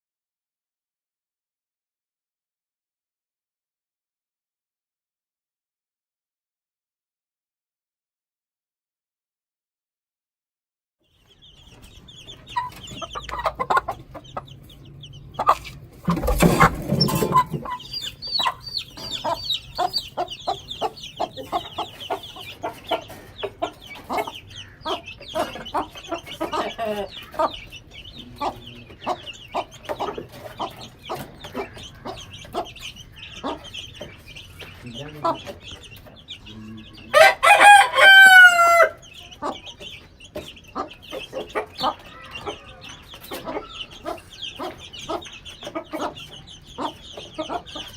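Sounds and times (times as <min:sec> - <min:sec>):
chicks peeping: 0:11.0 - 0:47.9
hen clucking: 0:11.1 - 0:47.9.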